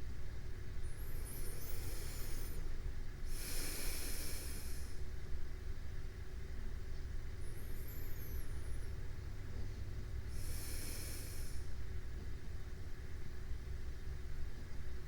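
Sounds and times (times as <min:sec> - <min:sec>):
steady low hum: 0:00.0 - 0:14.6
person breathing in sleep: 0:00.9 - 0:05.1, 0:10.3 - 0:11.8.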